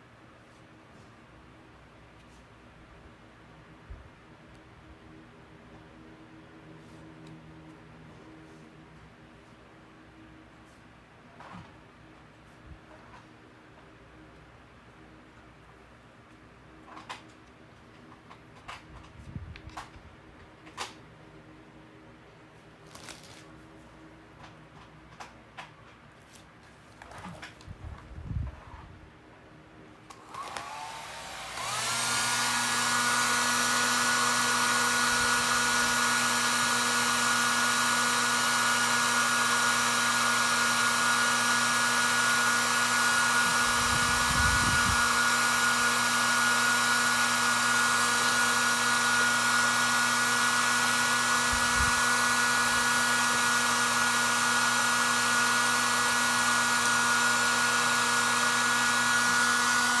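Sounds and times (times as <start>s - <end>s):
electric blower whining: 30.1s - 60.0s.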